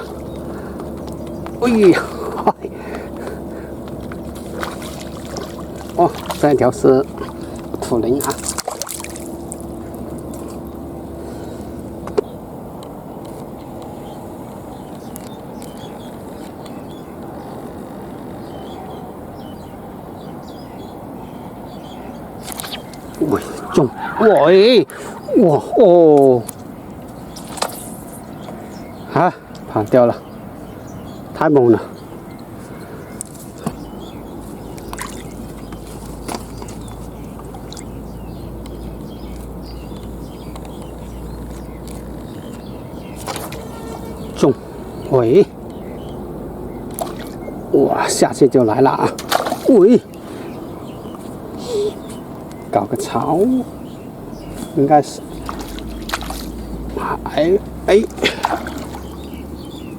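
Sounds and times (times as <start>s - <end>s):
faint bird chirps: 13.9s - 29.2s, 49.7s - 59.9s.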